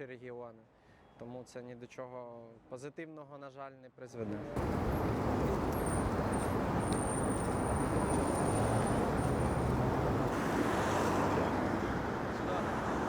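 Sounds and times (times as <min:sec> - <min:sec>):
passing vehicles rushing: 0:04.6 - 0:13.0.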